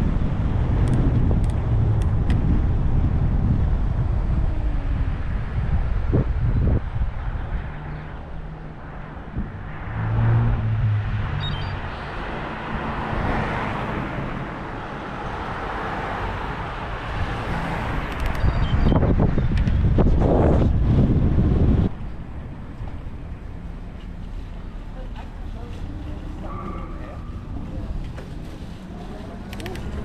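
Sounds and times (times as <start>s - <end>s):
wind buffeting microphone: 0.0s - 13.8s, 16.5s - 24.8s
road traffic rumble: 0.0s - 30.0s
vehicle passing: 0.0s - 30.0s.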